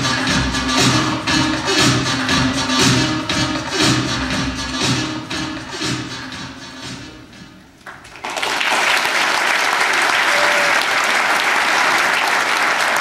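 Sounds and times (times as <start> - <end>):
music: 0.0 - 7.8
audience applauding: 7.8 - 13.0.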